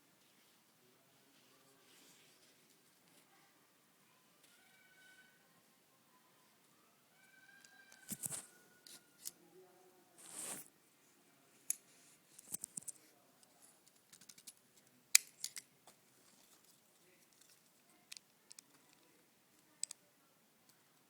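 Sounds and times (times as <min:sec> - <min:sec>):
brief rustle: 0:07.6 - 0:09.4, 0:10.2 - 0:10.7
plastic toy parts clicking: 0:13.8 - 0:15.7, 0:17.3 - 0:19.1, 0:19.8 - 0:20.0.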